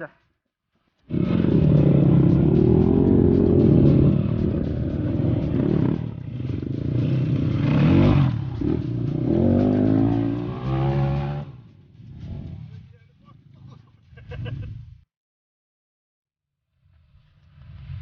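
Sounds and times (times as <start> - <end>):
motorcycle engine revving: 1.0 - 13.6.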